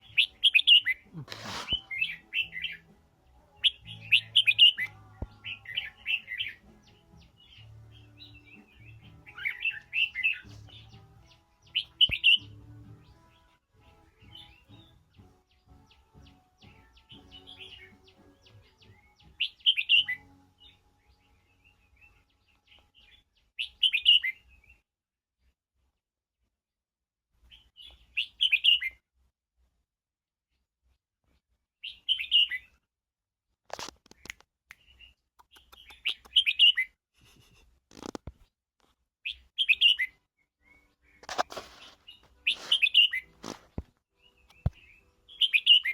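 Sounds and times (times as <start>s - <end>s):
bird chirping: 0.0s - 2.8s, 3.6s - 12.6s, 14.2s - 24.7s, 31.8s - 32.8s, 33.8s - 36.9s, 39.3s - 43.6s, 44.2s - 45.9s.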